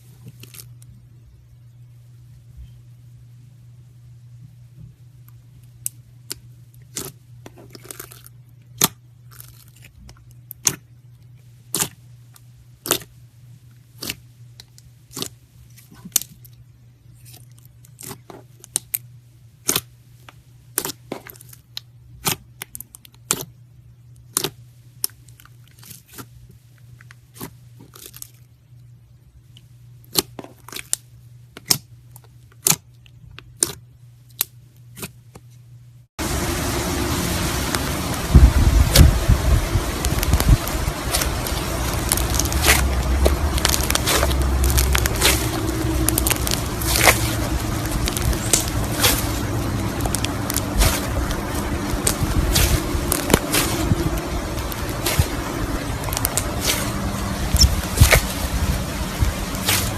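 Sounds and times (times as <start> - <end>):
steady low hum: 0.0 - 18.3, 31.0 - 59.9
slime popping and squeezing: 37.5 - 59.9.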